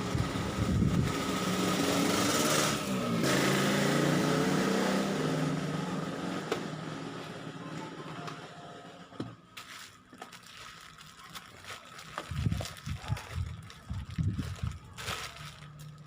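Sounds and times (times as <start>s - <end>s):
small engine droning: 0.0s - 9.3s.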